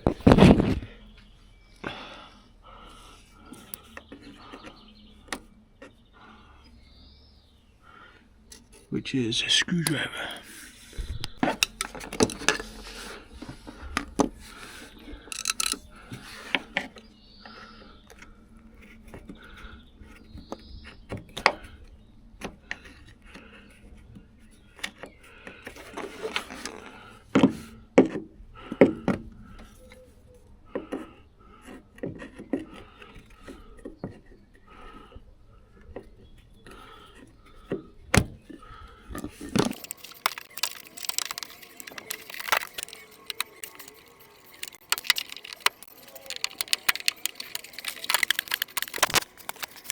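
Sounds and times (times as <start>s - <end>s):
plastic trim clips clicking: 15.3s - 15.8s, 39.6s - 49.9s.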